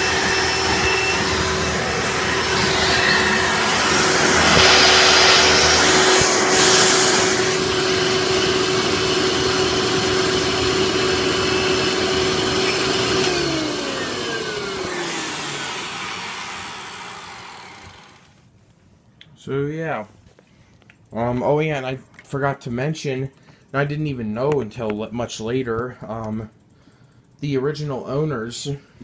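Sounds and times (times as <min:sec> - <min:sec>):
vacuum cleaner running: 0:00.0 - 0:18.4
vacuum motor winding down: 0:00.0 - 0:18.4.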